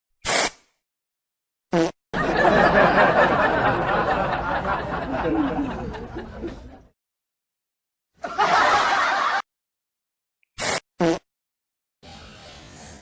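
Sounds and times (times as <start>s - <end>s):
people laughing: 2.2s - 6.9s, 8.2s - 9.4s.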